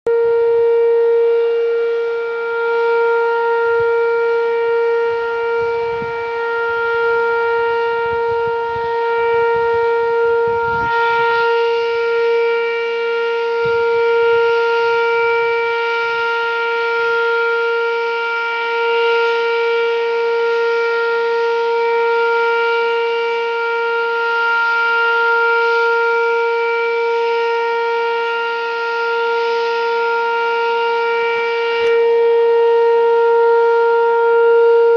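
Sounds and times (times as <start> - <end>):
warning siren steady tone: 0.0 - 34.9
wind buffeting microphone: 3.3 - 12.2, 13.4 - 14.6.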